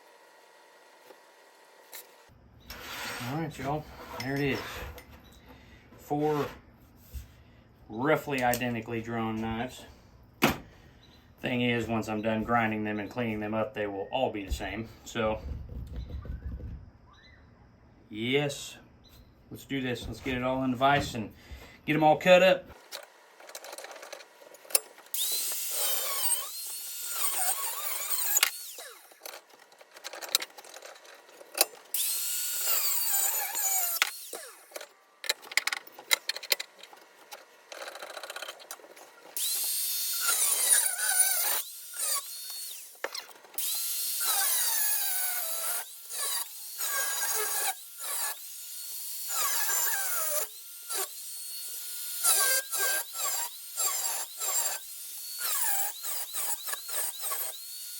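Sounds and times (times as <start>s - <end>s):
power tool cutting steel: 24.7s - 29.4s, 31.6s - 34.9s, 37.8s - 57.9s.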